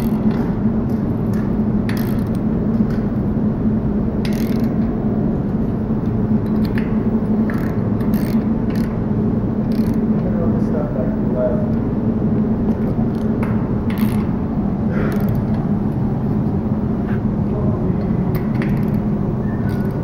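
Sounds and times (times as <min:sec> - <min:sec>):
ratchet wrench clicking: 0:00.0 - 0:00.3, 0:01.9 - 0:02.4, 0:04.2 - 0:04.8, 0:07.5 - 0:09.0, 0:09.7 - 0:10.0, 0:13.9 - 0:14.3, 0:15.1 - 0:15.5, 0:18.3 - 0:19.0, 0:19.7 - 0:20.0
steady low hum: 0:00.0 - 0:20.0.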